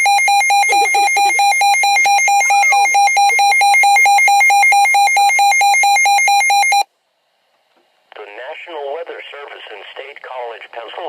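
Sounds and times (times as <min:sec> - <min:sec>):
electronic alert beeps: 0:00.0 - 0:06.8.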